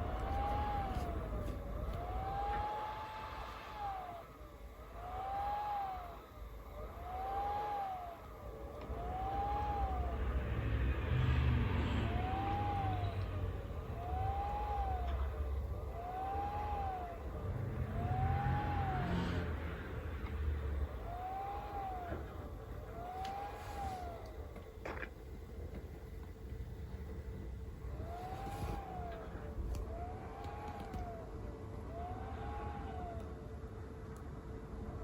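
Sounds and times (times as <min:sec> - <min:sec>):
low rumble: 0:00.0 - 0:05.0
computer whining tone: 0:00.0 - 0:35.0.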